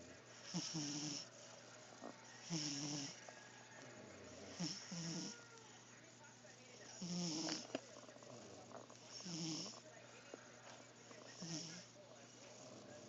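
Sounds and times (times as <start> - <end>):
cat snoring: 0.0 - 5.5, 6.9 - 9.9, 11.0 - 13.0.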